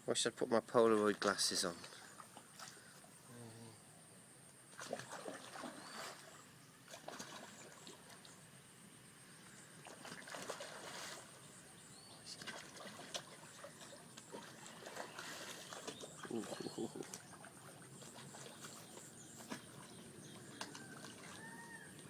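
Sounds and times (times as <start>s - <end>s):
fish splashing at water surface: 4.7s - 8.3s, 9.8s - 11.5s, 12.3s - 22.0s.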